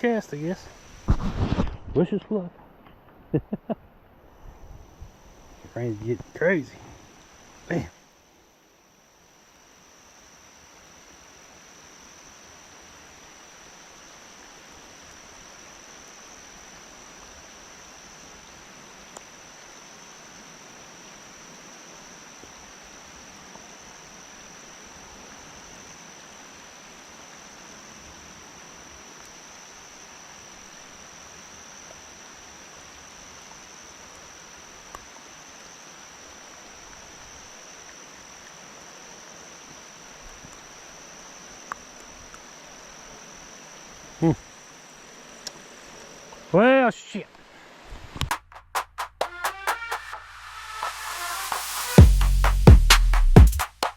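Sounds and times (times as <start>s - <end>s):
heavy rain hissing: 0.0s - 1.8s, 4.2s - 8.2s, 9.7s - 53.9s
faint ticks: 45.3s - 45.6s.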